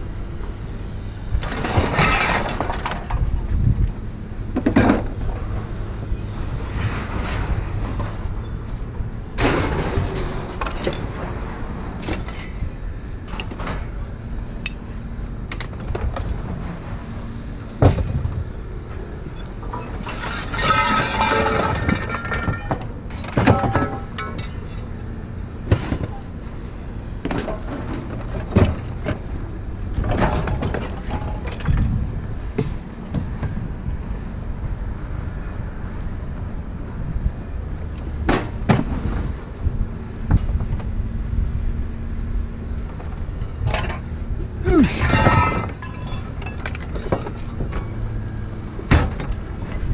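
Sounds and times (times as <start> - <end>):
low steady hum: 0.0 - 49.9
scrap metal clanking onto pile: 1.4 - 3.2, 9.4 - 11.4, 12.0 - 12.7, 19.7 - 24.9, 30.0 - 31.9, 44.7 - 48.0.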